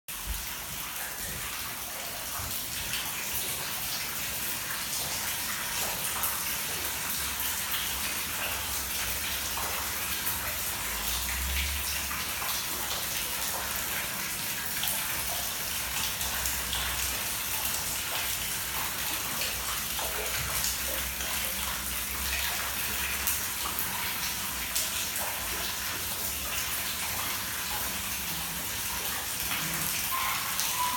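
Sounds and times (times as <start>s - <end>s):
water pouring and dripping: 0.1s - 30.9s.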